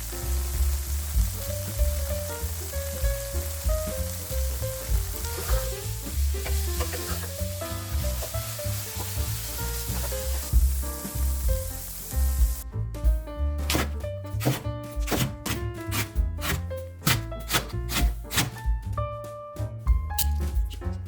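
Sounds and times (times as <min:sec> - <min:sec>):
food sizzling in frying pan: 0:00.0 - 0:12.6
background music: 0:00.0 - 0:21.0
stirring food in pan: 0:04.0 - 0:10.9.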